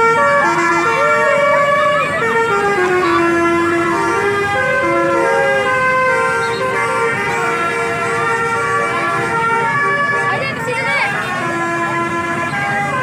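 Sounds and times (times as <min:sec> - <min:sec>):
multi-tone musical horn tune: 0:00.0 - 0:10.4.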